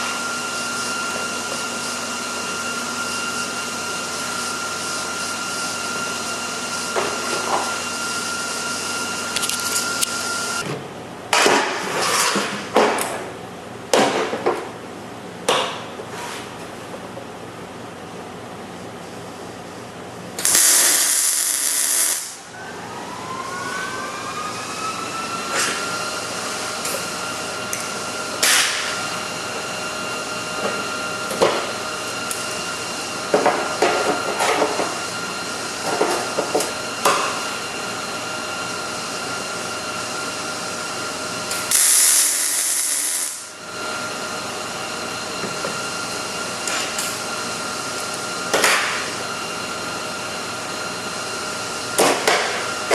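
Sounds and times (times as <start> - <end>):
welder hissing and crackling: 20.4 - 22.4, 41.5 - 43.5
steady whine rising in pitch: 22.4 - 33.2.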